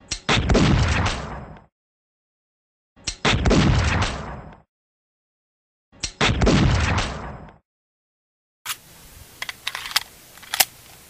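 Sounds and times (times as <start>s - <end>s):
sharp mechanical clicks: 9.4s - 10.7s.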